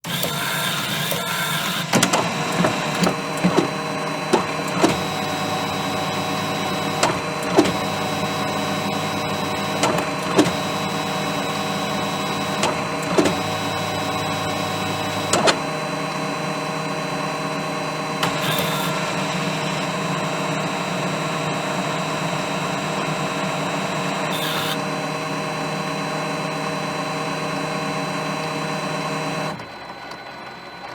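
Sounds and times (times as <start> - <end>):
laser printer motor hum: 0.0 - 30.9
printer clicks and knocks: 1.8 - 15.7, 18.2 - 19.2.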